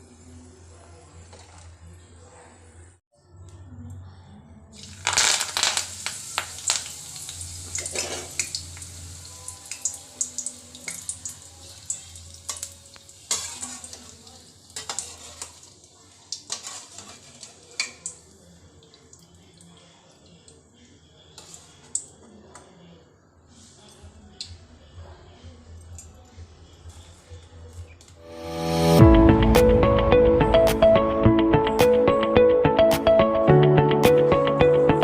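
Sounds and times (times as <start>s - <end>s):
food sizzling in hot oil: 4.8s - 18.2s.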